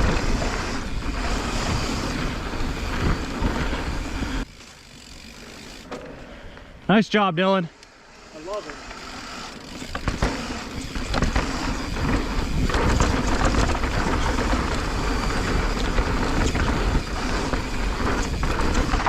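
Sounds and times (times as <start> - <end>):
bike rattling over bumps: 0.0 - 6.6, 8.2 - 19.0
bike tyres rolling on dirt: 0.0 - 7.2, 7.8 - 19.0.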